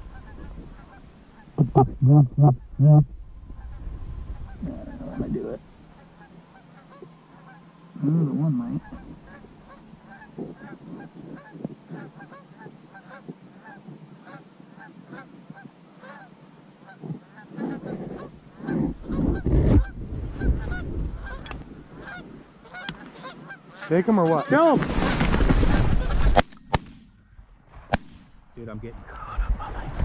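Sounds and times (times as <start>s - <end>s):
geese honking: 0.0s - 3.0s, 4.4s - 25.2s
low rumble: 1.6s - 5.9s.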